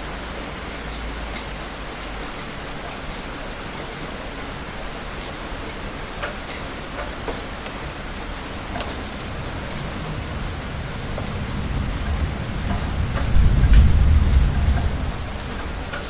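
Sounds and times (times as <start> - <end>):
heavy rain hissing: 0.0 - 16.0.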